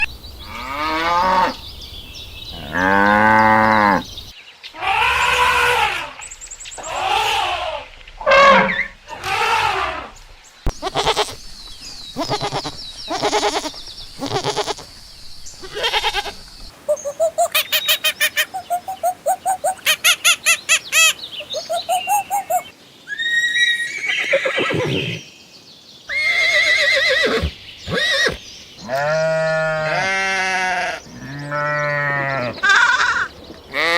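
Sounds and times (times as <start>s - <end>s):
farm animals calling: 0.0s - 25.2s, 26.1s - 33.9s
rapid high repeated calls: 15.6s - 22.8s.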